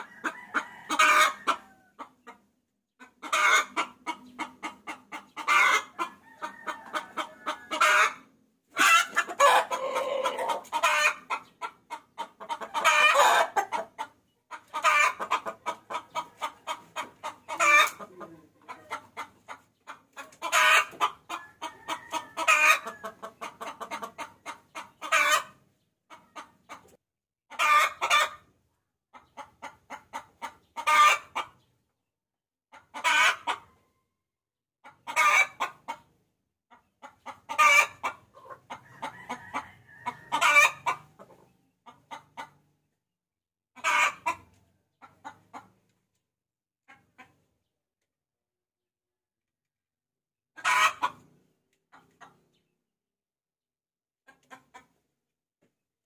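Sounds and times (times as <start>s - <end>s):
hen cackling: 0.0s - 2.4s, 3.0s - 26.9s, 27.5s - 28.4s, 29.2s - 31.5s, 32.7s - 33.7s, 34.8s - 36.0s, 37.0s - 42.6s, 43.8s - 45.7s, 50.6s - 51.2s.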